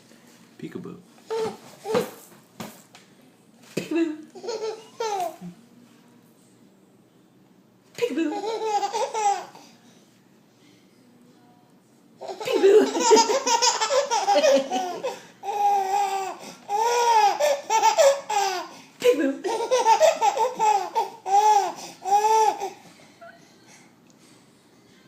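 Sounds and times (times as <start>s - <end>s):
baby laughing: 4.4s - 5.4s, 8.0s - 9.6s, 12.2s - 22.8s.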